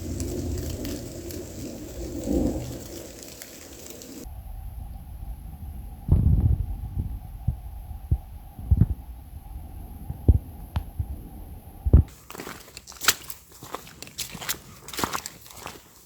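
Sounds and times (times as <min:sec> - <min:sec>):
footsteps on dry leaves: 0:00.0 - 0:04.3, 0:12.1 - 0:16.0
faint steady hum: 0:00.0 - 0:12.1
low muffled thuds: 0:04.8 - 0:12.1.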